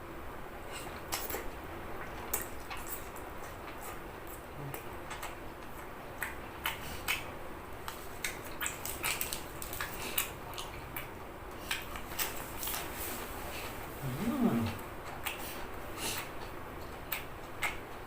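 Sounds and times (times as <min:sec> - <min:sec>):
chewing and wet mouth noises: 0:00.7 - 0:18.0
person humming: 0:14.0 - 0:14.8.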